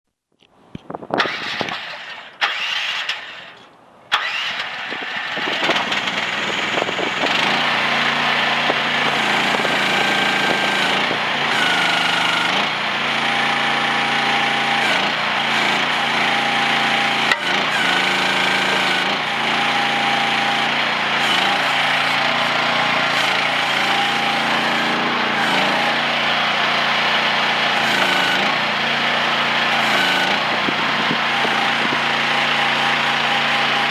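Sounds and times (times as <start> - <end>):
diesel engine starting and running: 0.4 - 33.9
high whining tones: 15.8 - 33.9.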